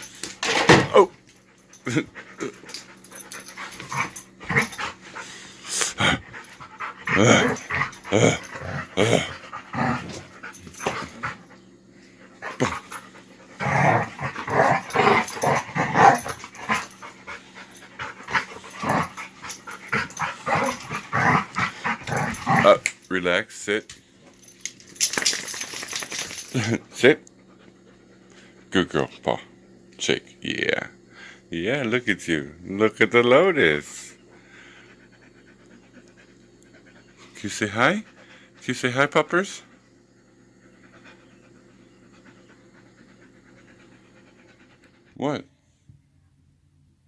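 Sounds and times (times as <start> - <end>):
puppy growling and yipping: 6.8 - 10.4, 13.6 - 17.1, 18.2 - 22.9.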